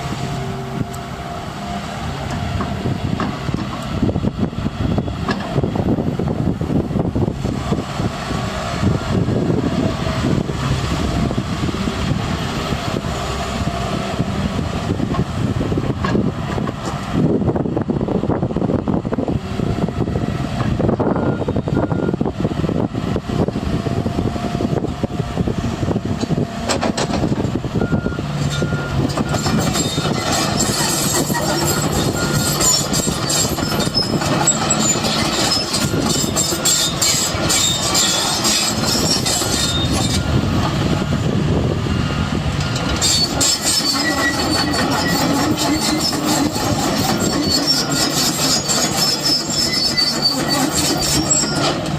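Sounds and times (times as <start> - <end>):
excavator running: 0.0 - 51.9
metallic track squealing and clanking: 26.2 - 41.2, 42.1 - 51.9.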